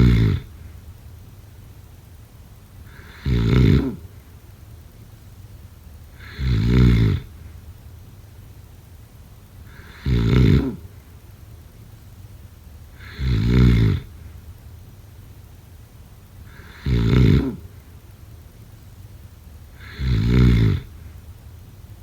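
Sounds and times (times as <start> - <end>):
person snoring: 0.0 - 0.5, 2.9 - 4.0, 6.2 - 7.3, 9.7 - 10.8, 13.0 - 14.1, 16.5 - 17.6, 19.8 - 20.9
quiet breathing: 1.8 - 5.3, 9.4 - 11.5, 15.8 - 22.0.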